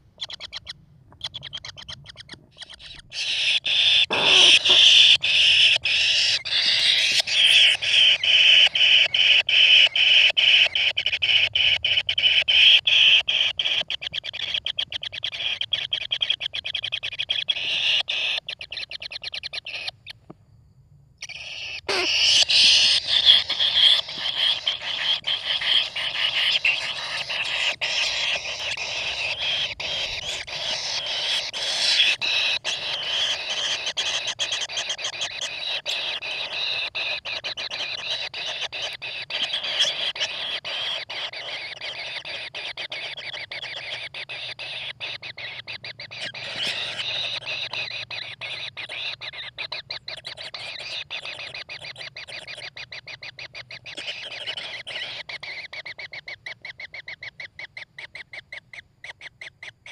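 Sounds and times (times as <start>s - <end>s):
bird nestlings rasping chatter: 0.2s - 20.0s, 21.2s - 58.3s.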